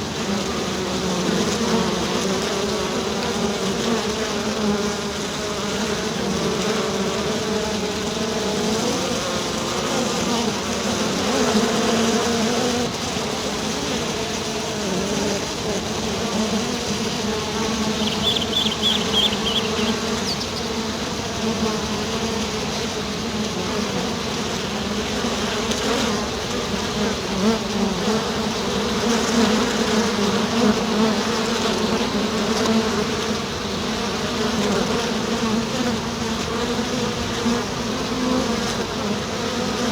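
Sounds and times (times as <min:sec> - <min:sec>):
honeybees buzzing: 0:00.0 - 0:39.9
high chirp: 0:17.9 - 0:20.6.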